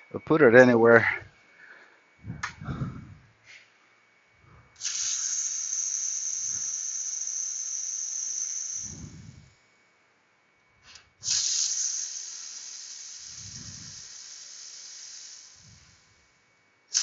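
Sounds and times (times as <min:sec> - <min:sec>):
hissing jet: 0:04.8 - 0:09.4, 0:11.2 - 0:16.0.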